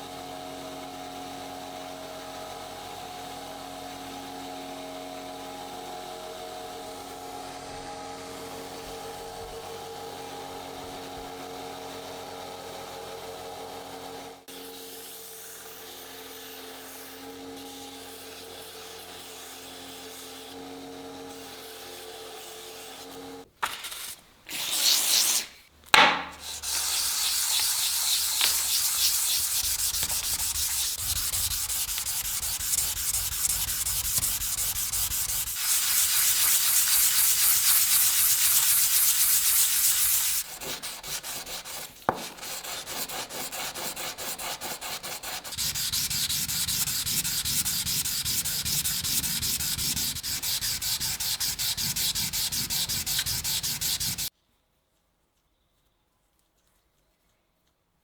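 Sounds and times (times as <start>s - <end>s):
sharp knocks: 26.0s - 26.4s
abrasive rubbing on knife blade: 26.4s - 43.2s, 43.8s - 54.3s.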